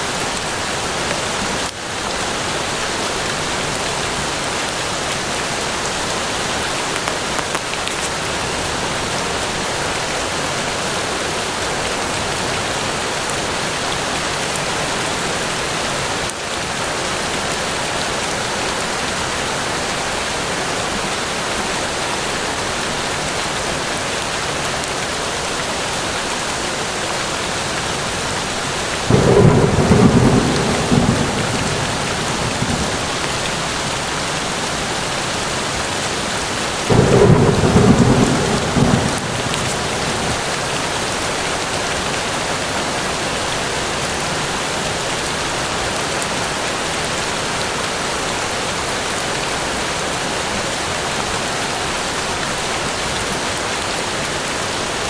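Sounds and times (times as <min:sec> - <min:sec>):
steady rain falling: 0:00.0 - 0:55.0
thunder rumble: 0:29.0 - 0:35.8, 0:36.8 - 0:40.8.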